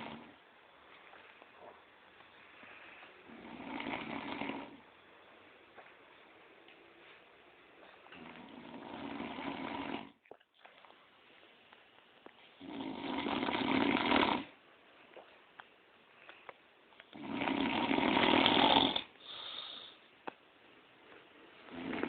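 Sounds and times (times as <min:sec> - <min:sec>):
man snoring: 0:03.3 - 0:04.8, 0:08.2 - 0:10.1, 0:12.6 - 0:14.5, 0:17.2 - 0:19.1, 0:21.7 - 0:22.0.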